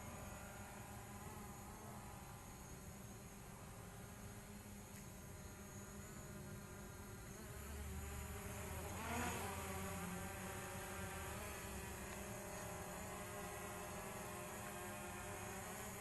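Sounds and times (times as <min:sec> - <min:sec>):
drone propellers buzzing: 0:05.6 - 0:16.0.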